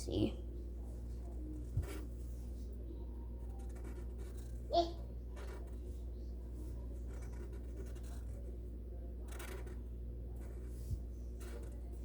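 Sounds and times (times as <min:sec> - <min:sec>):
pencil scratching on paper: 0:01.6 - 0:02.3, 0:03.5 - 0:04.6, 0:05.3 - 0:08.6, 0:09.2 - 0:12.0.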